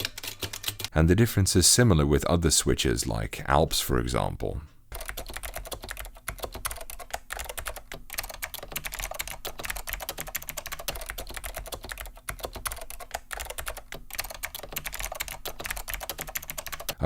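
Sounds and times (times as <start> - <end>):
fast typing on mechanical keyboard: 0.0 - 0.9, 4.9 - 17.0.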